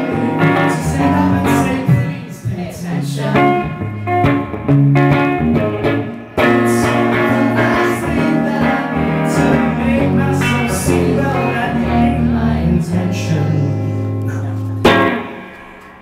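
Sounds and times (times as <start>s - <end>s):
person singing: 0.0s - 4.1s, 6.4s - 15.0s
guitar chords: 0.0s - 16.0s.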